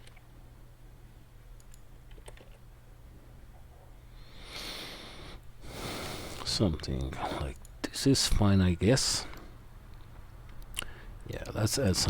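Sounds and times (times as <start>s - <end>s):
computer keyboard and mouse clicks: 0.0s - 0.2s, 1.6s - 2.6s
steady low hum: 0.0s - 12.0s.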